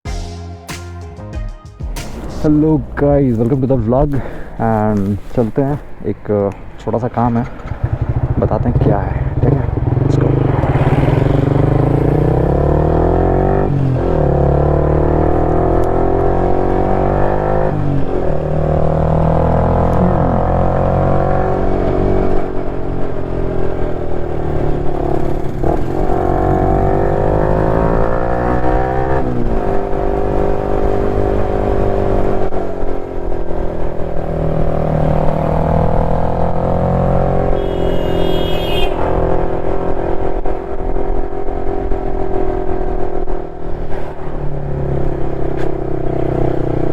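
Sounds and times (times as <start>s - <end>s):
motorcycle engine revving: 7.3s - 46.9s
short high-pitched tone: 20.0s - 21.3s, 37.6s - 39.1s.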